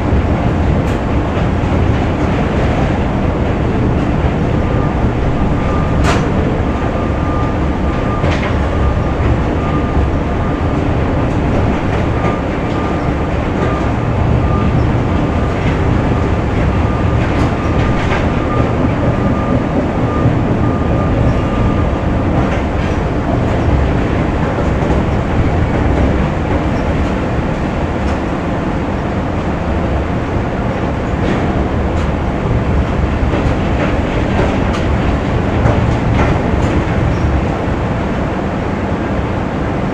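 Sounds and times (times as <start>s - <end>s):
heavy machinery rumble: 0.0s - 39.9s.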